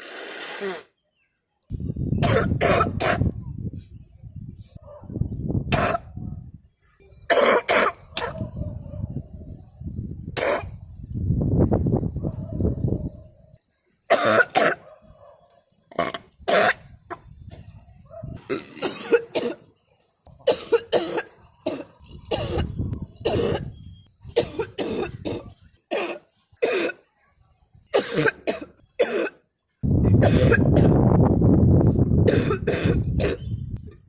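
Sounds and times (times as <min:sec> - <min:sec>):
woman coughing: 0:18.5 - 0:19.6, 0:20.4 - 0:23.6, 0:24.4 - 0:27.0, 0:27.9 - 0:29.4, 0:30.2 - 0:31.0, 0:32.3 - 0:33.4.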